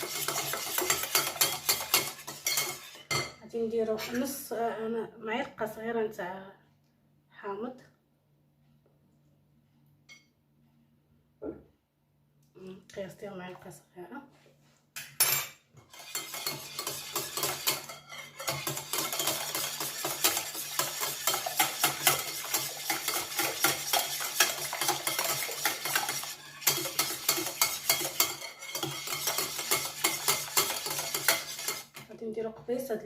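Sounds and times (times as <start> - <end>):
whisk clicking against a bowl: 0.0 - 3.0, 15.9 - 32.1.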